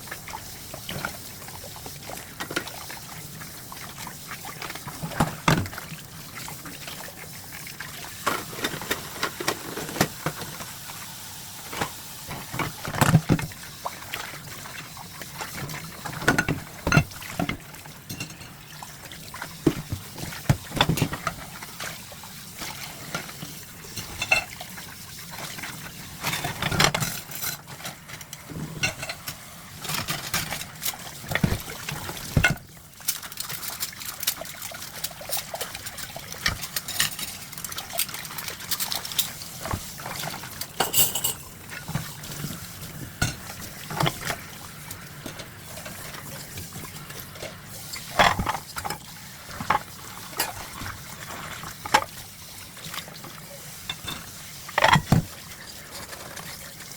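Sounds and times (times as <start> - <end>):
water running and splashing: 0.0 - 56.9
dishes clinking: 16.2 - 18.6, 24.0 - 24.6, 28.5 - 30.1, 40.6 - 42.0, 53.9 - 55.2.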